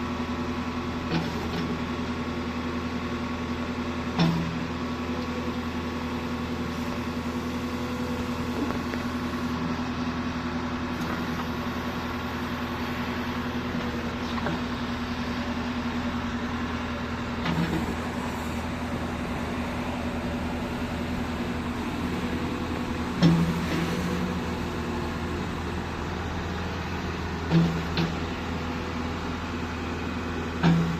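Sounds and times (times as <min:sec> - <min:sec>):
excavator diesel engine running: 0:00.0 - 0:30.9
faint machine knocks and clanks: 0:30.6 - 0:30.9.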